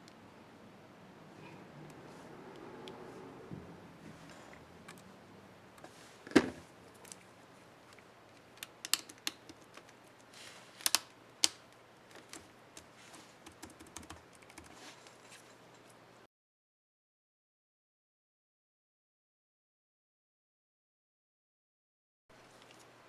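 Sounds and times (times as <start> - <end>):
laptop keys clicking: 8.3 - 14.8.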